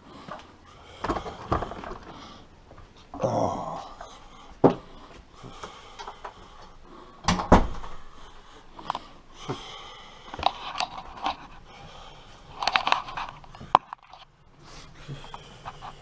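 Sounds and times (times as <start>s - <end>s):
knocks and clunks of handling: 1.0s - 2.2s.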